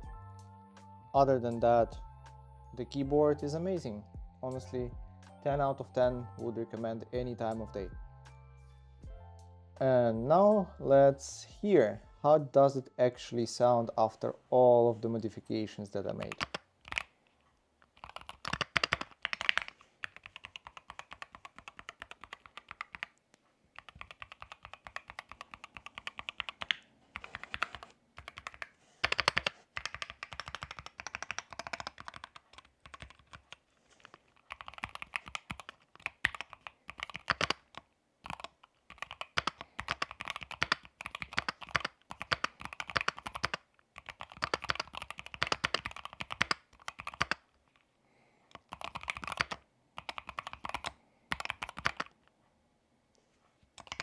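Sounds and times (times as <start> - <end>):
mechanical keyboard typing: 16.1 - 17.1, 17.8 - 23.2, 23.8 - 47.5, 48.5 - 52.2, 53.8 - 54.0.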